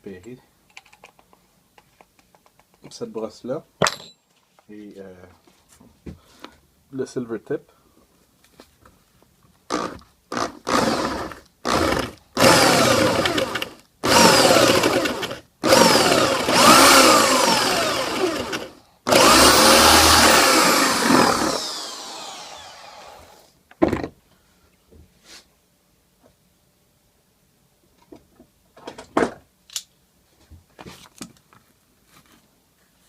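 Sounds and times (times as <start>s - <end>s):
electric drill boring: 9.7s - 23.5s
knock: 23.8s - 24.1s.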